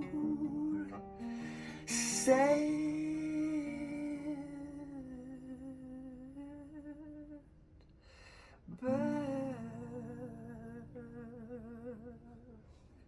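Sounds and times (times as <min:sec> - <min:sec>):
person humming: 0:00.0 - 0:01.1
breath: 0:01.2 - 0:01.9, 0:08.0 - 0:08.7.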